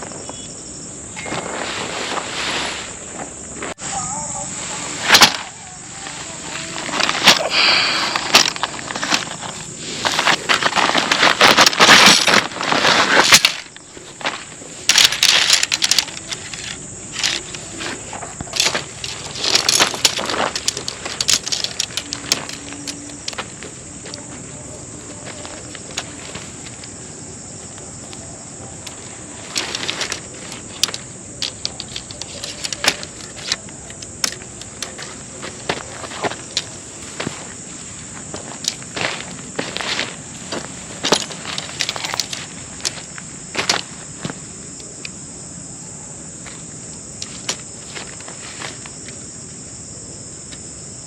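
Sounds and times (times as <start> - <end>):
high-pitched hiss: 0.0 - 51.0
rustling and crunching: 1.1 - 45.2, 46.4 - 49.4
scattered clicks: 14.9 - 23.5, 28.8 - 35.1, 41.1 - 43.9.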